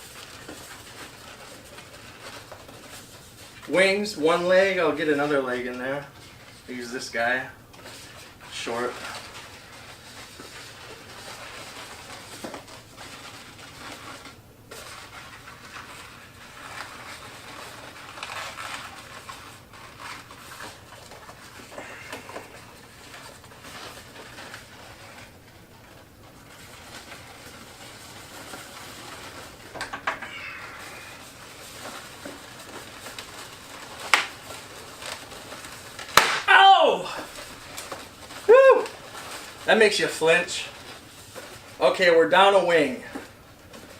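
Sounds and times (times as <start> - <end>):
balloons squeaking and rubbing: 0.0 - 43.9
balloon snapping: 34.1 - 34.4, 36.0 - 36.6.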